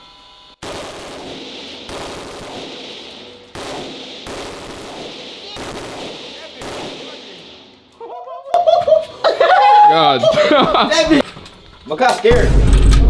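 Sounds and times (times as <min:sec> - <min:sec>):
gunshots with echo: 0:00.6 - 0:08.0, 0:12.3 - 0:13.0.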